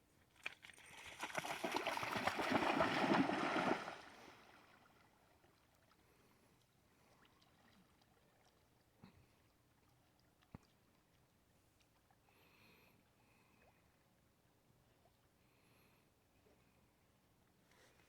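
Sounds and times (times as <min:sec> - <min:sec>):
water splashing and sloshing: 0:00.3 - 0:12.2.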